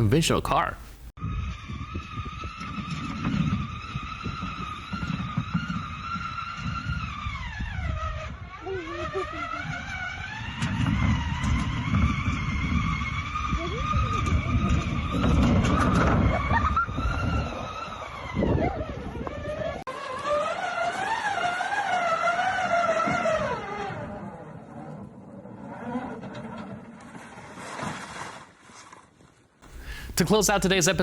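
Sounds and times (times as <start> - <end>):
vehicle motor whine: 17.4 - 25.1.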